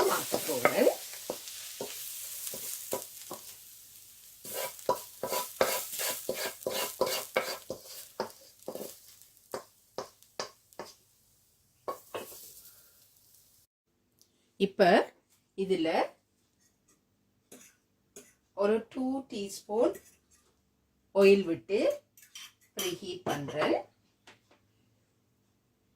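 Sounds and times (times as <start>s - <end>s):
spatula scraping a pan: 0.0s - 3.6s, 4.4s - 11.0s, 11.9s - 13.0s, 16.5s - 18.5s, 19.8s - 20.6s
faint sizzle: 0.0s - 13.7s.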